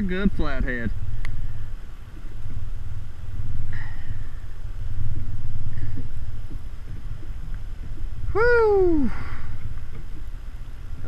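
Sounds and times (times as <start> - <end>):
wind buffeting microphone: 0.0 - 11.0
faint ticks and knocks: 9.5 - 11.0.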